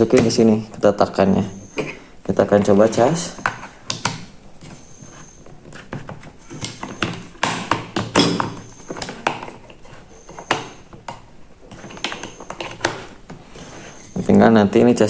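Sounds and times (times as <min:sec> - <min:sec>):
plastic clicks and taps: 0:03.4 - 0:04.8, 0:05.7 - 0:13.4.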